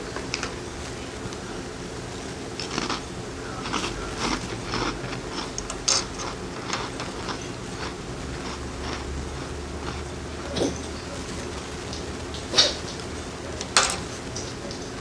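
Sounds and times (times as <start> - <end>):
person chewing crunchily: 2.6 - 11.3.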